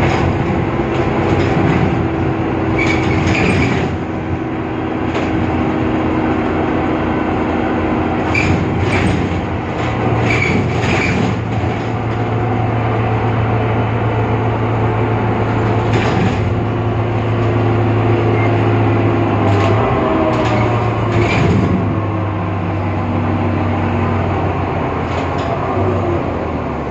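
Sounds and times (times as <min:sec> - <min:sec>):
bus engine running: 0:00.0 - 0:26.9
steady low drone: 0:00.0 - 0:26.9
high squeaks or rattles: 0:02.7 - 0:04.0, 0:08.2 - 0:11.9.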